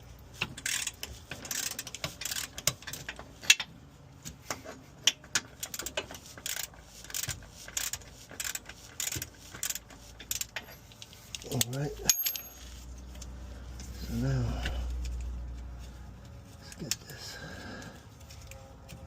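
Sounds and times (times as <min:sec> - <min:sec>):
metal clinks of wrench: 0:11.4 - 0:12.8.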